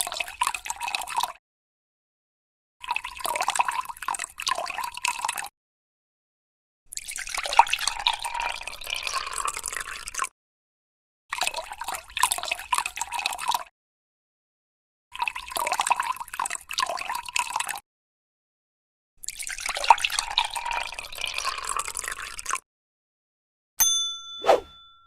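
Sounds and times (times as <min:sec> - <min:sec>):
water poured into a glass: 0:00.1 - 0:01.4, 0:02.8 - 0:05.5, 0:07.0 - 0:10.3, 0:15.2 - 0:17.8, 0:19.2 - 0:22.6.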